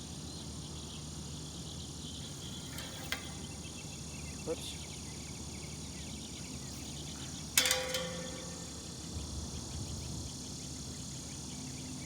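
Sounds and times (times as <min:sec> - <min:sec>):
sharp ringing click: 0:07.6 - 0:09.1.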